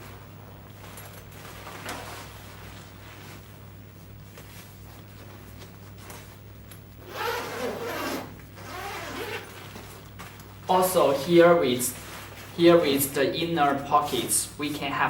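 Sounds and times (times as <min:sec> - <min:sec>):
backpack zipper opening: 0:07.0 - 0:09.8.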